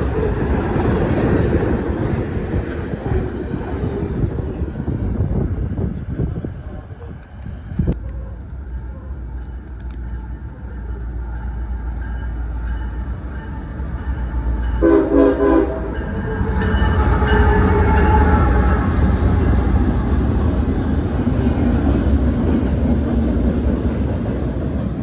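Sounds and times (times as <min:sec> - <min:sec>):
train locomotive rumble: 0:00.0 - 0:25.0
train horn blast: 0:14.5 - 0:19.3.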